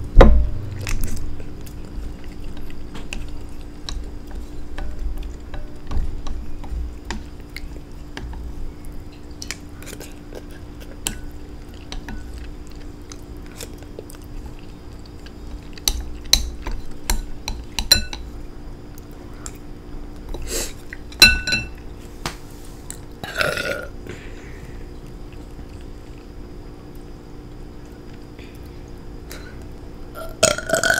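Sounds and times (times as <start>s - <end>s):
person chewing: 0.7s - 17.8s, 24.6s - 26.4s, 29.3s - 30.9s
cutlery clinking against bowl: 15.8s - 18.3s, 21.1s - 21.8s
person burping: 23.2s - 24.0s, 30.2s - 30.9s.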